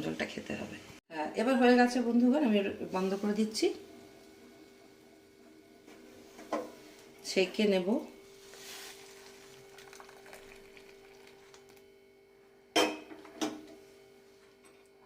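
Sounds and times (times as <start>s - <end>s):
faint steady hum: 0.0s - 15.0s
liquid pouring into cup: 8.5s - 11.9s.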